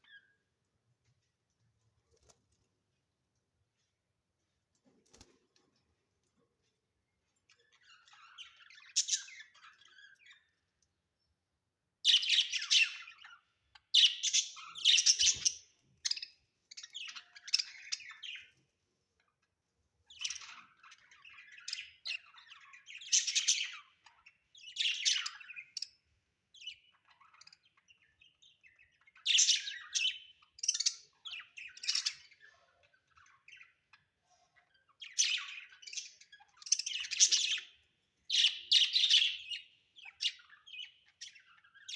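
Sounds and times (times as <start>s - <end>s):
budgerigars chirping: 12.1s - 18.6s, 20.1s - 26.0s, 26.6s - 32.4s, 34.9s - 41.9s.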